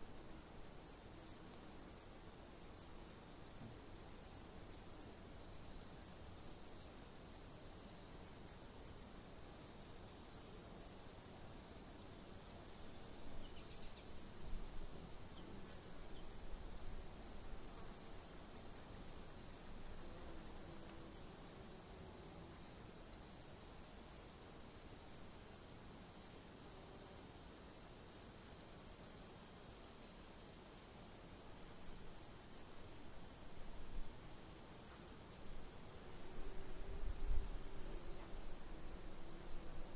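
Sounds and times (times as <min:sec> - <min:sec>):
cricket chirping: 0:08.0 - 0:39.9.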